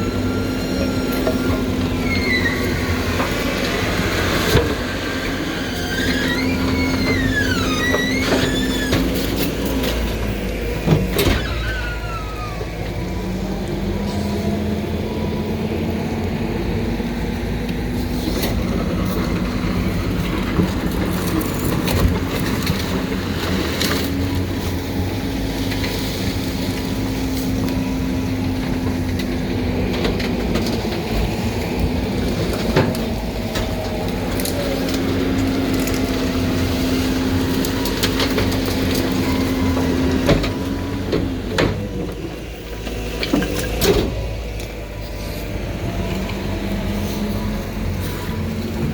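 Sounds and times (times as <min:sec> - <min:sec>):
refuse truck compactor droning: 0:00.0 - 0:48.9
waste cracking and snapping: 0:32.9 - 0:39.6.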